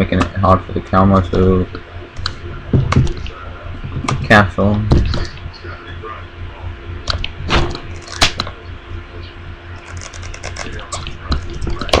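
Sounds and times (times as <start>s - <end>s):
plastic packaging crinkling: 7.9s - 8.4s, 9.8s - 11.1s.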